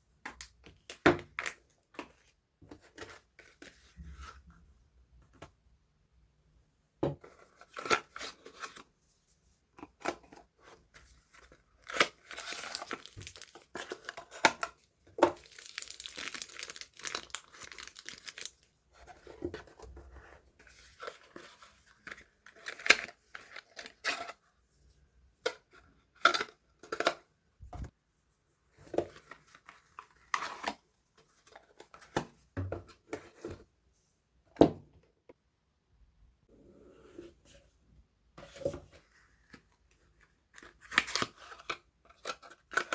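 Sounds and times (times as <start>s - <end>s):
wrapper tearing and crinkling: 12.4s - 13.7s, 15.4s - 18.7s.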